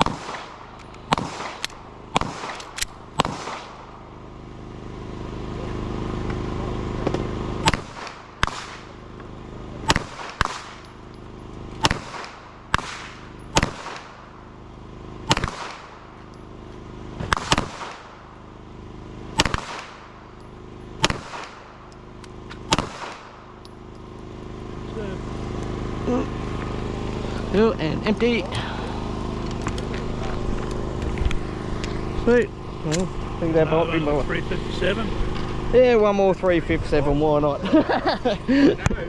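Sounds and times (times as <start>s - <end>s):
pistol shots with echo: 0.0s - 3.9s, 9.8s - 10.9s, 11.8s - 14.3s, 15.3s - 16.1s, 17.2s - 18.3s, 19.4s - 20.2s, 21.0s - 21.8s, 22.5s - 23.5s
steady low hum: 0.0s - 39.0s.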